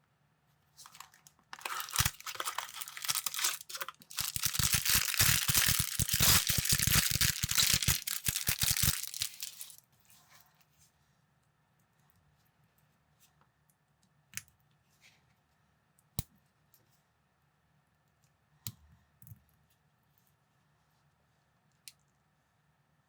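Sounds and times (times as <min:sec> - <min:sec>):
plastic packaging crinkling: 0:00.8 - 0:09.8.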